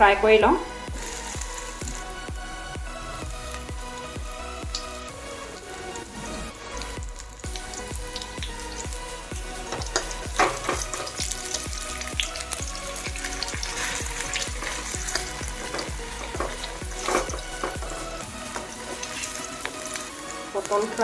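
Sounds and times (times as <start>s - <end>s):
vegetables sizzling in hot oil: 0.8s - 2.2s, 3.2s - 21.0s
spatula clicking and scraping pan: 9.7s - 11.6s, 13.1s - 20.1s.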